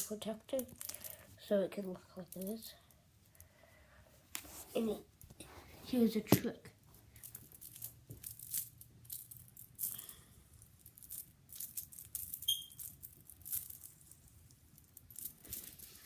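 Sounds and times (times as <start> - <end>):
small parts clicking and rattling: 0.0 - 1.3, 2.2 - 3.5, 7.1 - 16.0.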